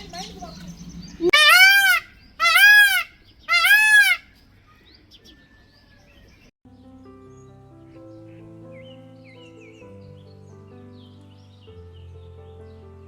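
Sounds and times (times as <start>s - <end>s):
large bird calling: 0.0s - 6.5s
music: 6.6s - 13.0s.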